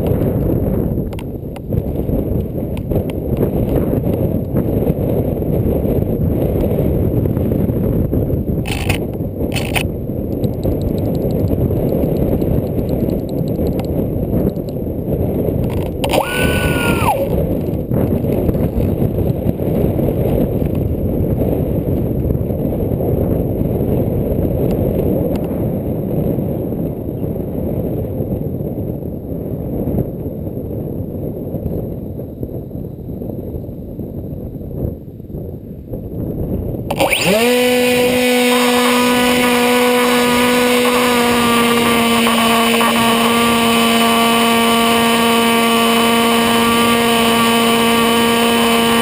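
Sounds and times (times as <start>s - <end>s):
wind buffeting microphone: 0.0s - 49.0s
electric motor whine: 8.7s - 9.0s, 15.7s - 17.4s, 36.9s - 49.0s.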